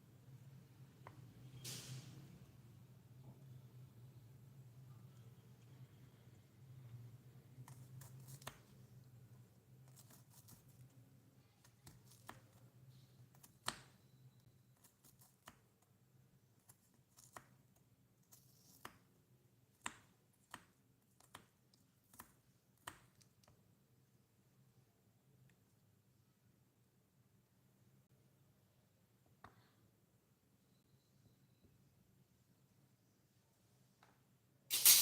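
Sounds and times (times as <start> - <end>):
tiny utensils clicking and tapping: 34.7 - 35.0.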